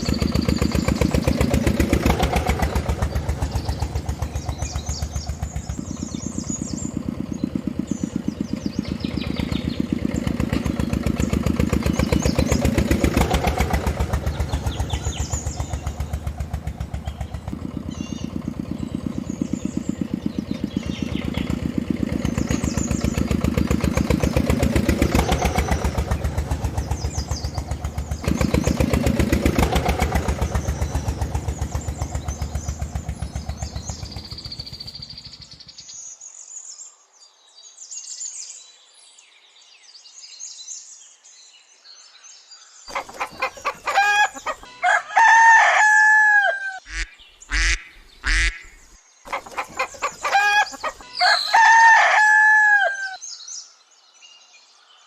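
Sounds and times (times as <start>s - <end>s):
engine chugging: 0.0s - 35.9s, 42.9s - 46.1s, 46.9s - 52.4s
rooster clucking and crowing: 42.9s - 48.6s, 49.3s - 53.2s.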